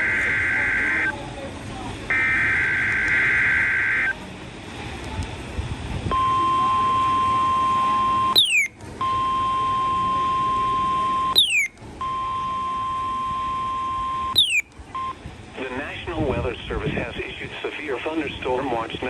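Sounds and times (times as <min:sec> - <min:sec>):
steady alarm tone: 0:00.0 - 0:01.1, 0:02.1 - 0:04.2, 0:06.1 - 0:14.6.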